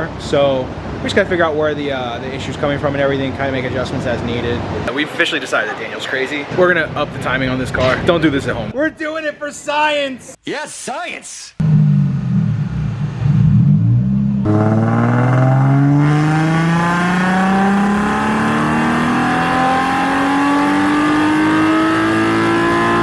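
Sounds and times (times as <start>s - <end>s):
car engine revving on dyno: 11.6s - 23.0s.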